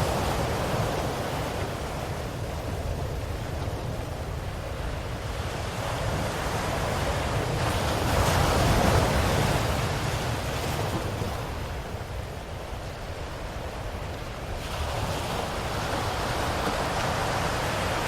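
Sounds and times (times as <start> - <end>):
low rumble of surf: 0.0 - 18.0
wave breaking on shore: 13.7 - 18.0.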